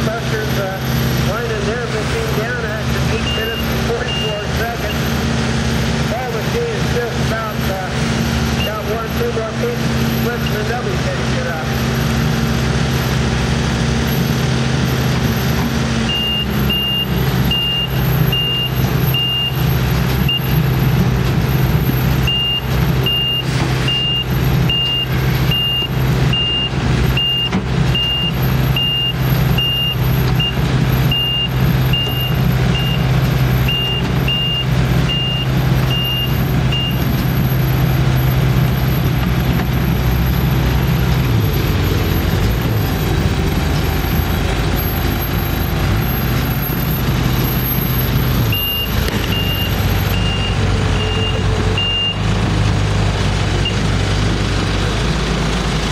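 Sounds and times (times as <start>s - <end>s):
heavy machine engine running: 0.0s - 55.9s
backup alarm beeping: 3.1s - 5.0s, 16.1s - 19.6s, 22.3s - 37.0s, 48.5s - 52.3s.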